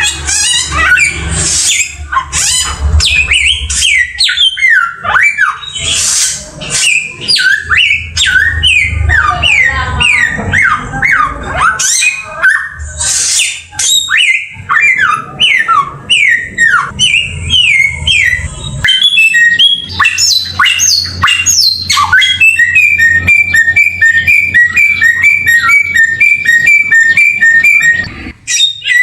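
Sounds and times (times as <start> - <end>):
songbird singing: 3.0 - 29.0.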